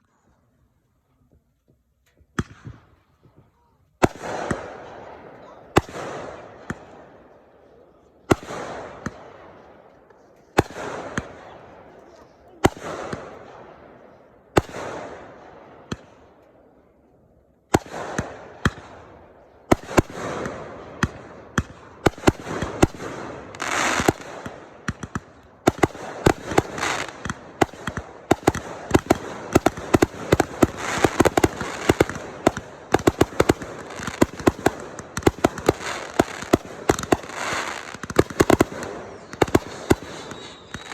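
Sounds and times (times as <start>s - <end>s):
fireworks bangs and crackling: 2.2s - 16.7s, 17.7s - 40.9s.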